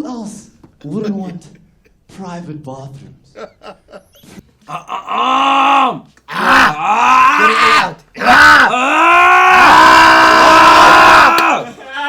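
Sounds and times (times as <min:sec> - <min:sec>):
person wailing: 0:04.7 - 0:12.0.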